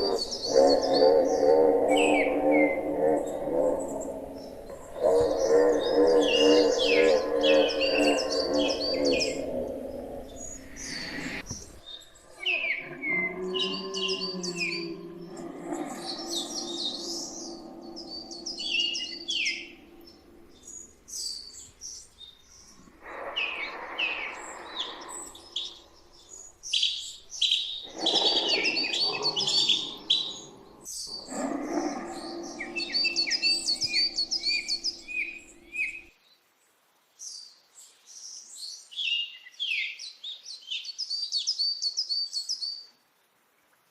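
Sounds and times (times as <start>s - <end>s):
low steady layered sound: 0.0s - 21.6s
small birds chirping and trilling: 0.0s - 36.5s.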